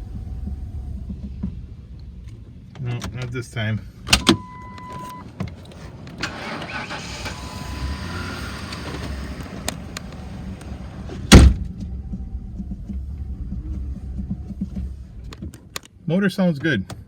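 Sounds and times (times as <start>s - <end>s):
car engine idling: 0.0s - 15.8s
starter cranking engine: 5.6s - 11.0s.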